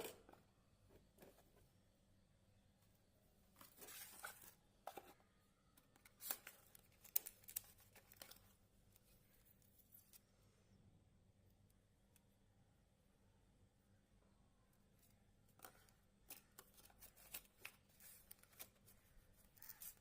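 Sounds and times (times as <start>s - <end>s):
rustling and crinkling: 3.5s - 10.2s, 15.0s - 20.0s.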